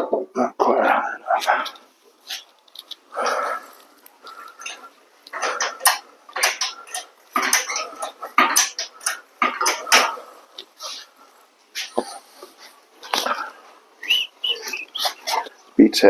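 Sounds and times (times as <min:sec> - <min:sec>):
metallic clanking and rattling: 0:04.2 - 0:11.1.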